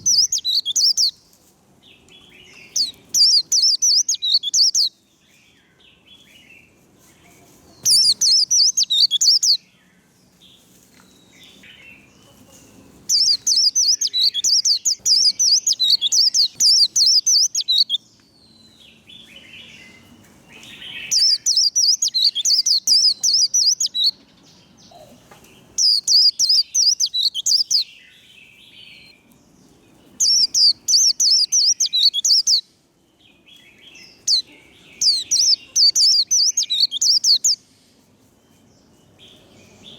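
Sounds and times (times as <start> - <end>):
bird twittering song: 0.0 - 39.9
soft bird chips: 6.2 - 9.6.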